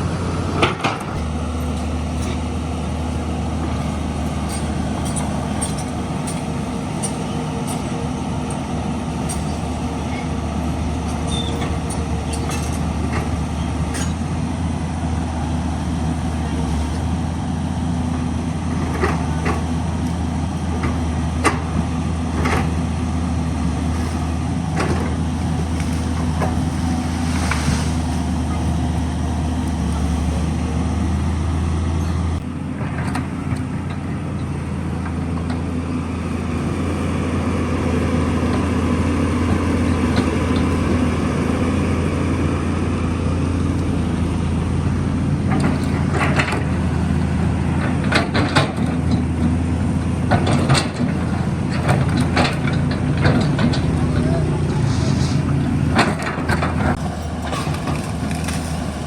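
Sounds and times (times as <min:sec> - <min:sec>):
diesel engine running: 0:00.0 - 0:59.0.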